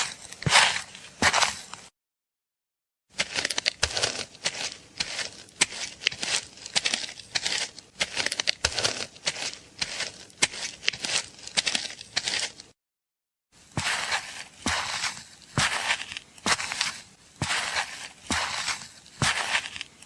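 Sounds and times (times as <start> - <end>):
footsteps crunching: 0.0 - 1.9, 3.1 - 12.8, 13.6 - 20.0.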